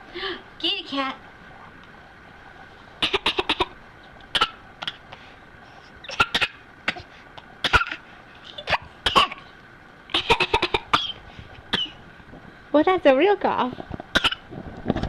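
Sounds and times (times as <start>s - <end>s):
child cough-laughing: 3.0s - 3.8s, 4.4s - 5.0s, 6.1s - 8.0s, 8.6s - 9.4s, 10.1s - 12.0s, 14.2s - 14.4s.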